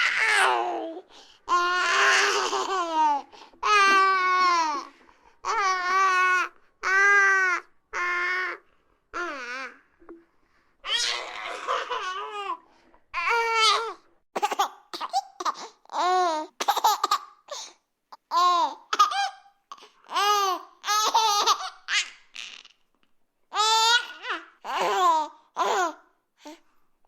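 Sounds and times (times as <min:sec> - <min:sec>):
baby laughing: 0:10.9 - 0:12.6, 0:13.7 - 0:17.6, 0:18.2 - 0:22.8.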